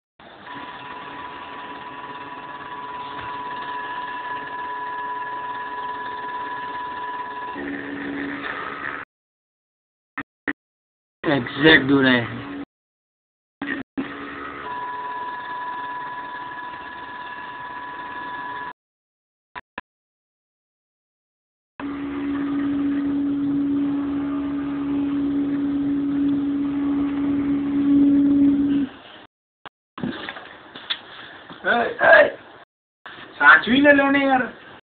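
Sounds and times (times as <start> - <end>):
machine motors whining: 0.5 - 9.0, 21.8 - 28.9.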